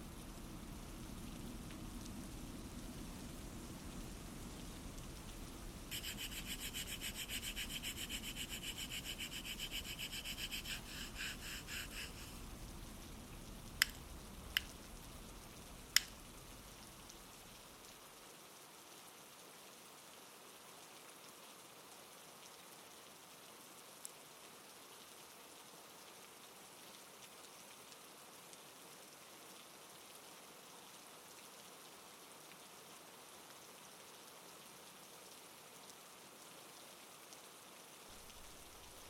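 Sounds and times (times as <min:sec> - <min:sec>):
soft rain-like hiss: 0:00.0 - 0:39.0
rapid rubbing strokes: 0:05.9 - 0:12.4
sharp clicks: 0:13.8 - 0:14.7.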